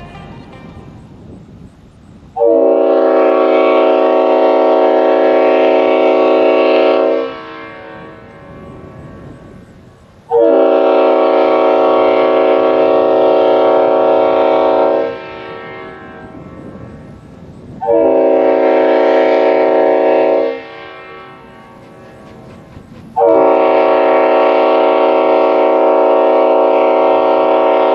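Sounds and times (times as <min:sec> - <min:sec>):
locomotive air horn blasts: 0:02.4 - 0:08.9, 0:10.3 - 0:16.4, 0:17.8 - 0:21.8, 0:23.2 - 0:27.9.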